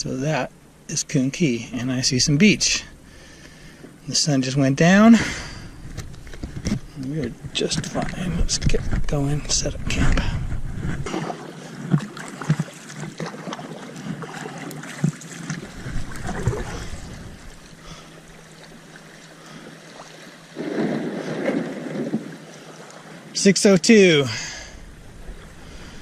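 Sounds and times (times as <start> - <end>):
wind noise on microphone: 5.7 - 11.3, 15.6 - 17.7
kayak paddle splashing water: 10.9 - 23.4.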